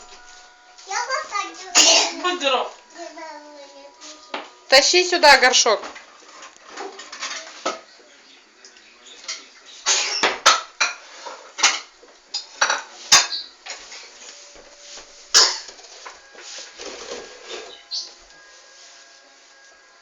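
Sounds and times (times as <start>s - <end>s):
dishes and cutlery clinking: 5.4s - 7.9s, 9.1s - 18.2s.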